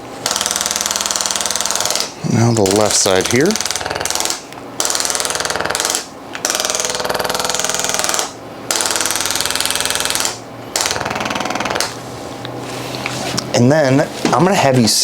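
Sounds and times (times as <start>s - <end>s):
rapid mechanical taps: 0.2s - 12.0s.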